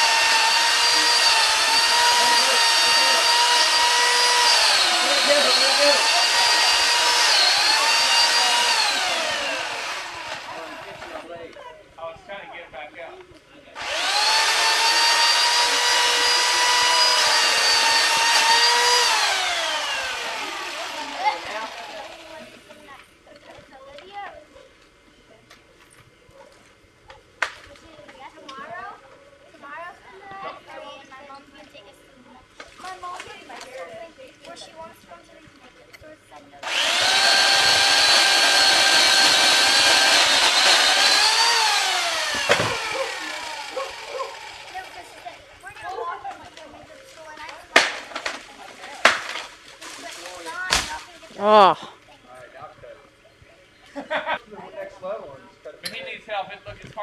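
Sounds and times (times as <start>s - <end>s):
electric chainsaw whining: 0.0s - 11.3s, 13.8s - 22.6s, 36.6s - 45.3s.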